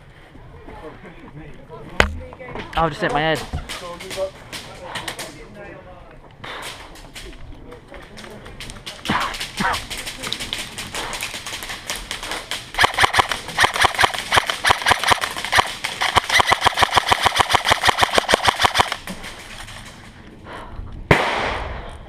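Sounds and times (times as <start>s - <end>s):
airsoft guns automatic fire: 11.4s - 19.9s.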